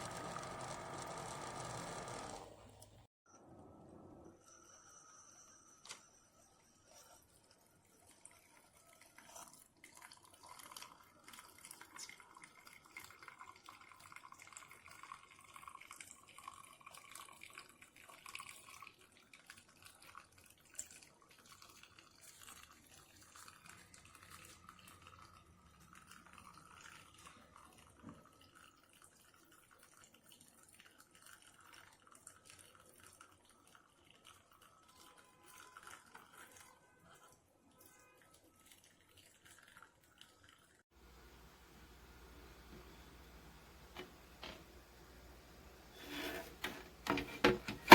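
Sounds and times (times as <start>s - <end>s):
coffee dripping into a mug: 6.9s - 45.1s
faint steady whine: 41.0s - 47.9s.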